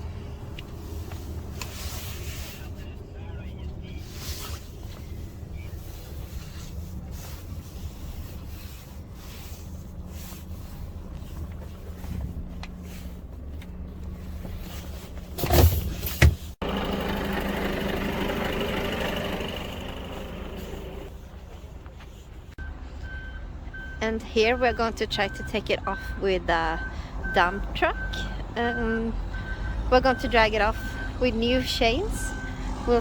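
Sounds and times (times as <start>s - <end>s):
truck engine running: 0.0s - 25.4s.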